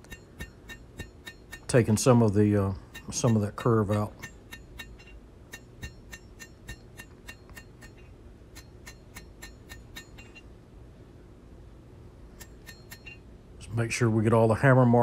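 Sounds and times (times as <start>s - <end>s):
hammer striking steel on anvil: 0.0s - 10.5s, 12.3s - 13.2s.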